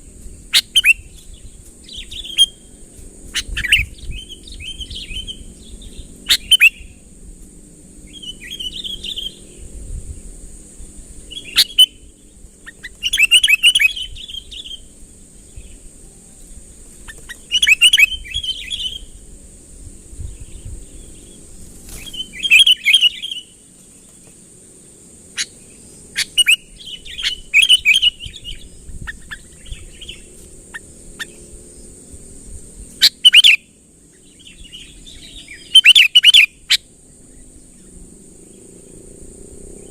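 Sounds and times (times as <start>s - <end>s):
bird chirping phrases: 0.6s - 2.7s, 3.3s - 7.0s, 8.1s - 9.8s, 11.2s - 19.2s, 20.2s - 24.2s, 25.4s - 31.5s, 33.0s - 38.0s.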